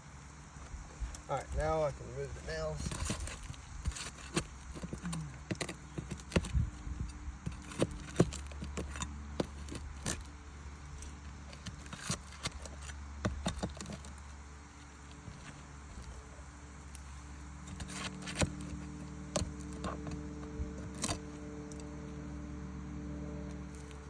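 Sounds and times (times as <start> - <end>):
low steady hum: 0.0 - 24.0
hand tool prying nails: 2.8 - 6.6, 7.4 - 10.3, 11.0 - 14.2, 17.7 - 21.8.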